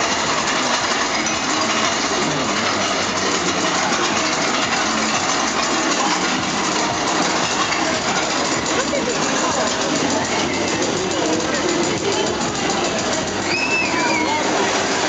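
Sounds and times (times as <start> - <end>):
faint crowd voices: 0.0 - 15.0
roller coaster train on track: 0.0 - 15.0.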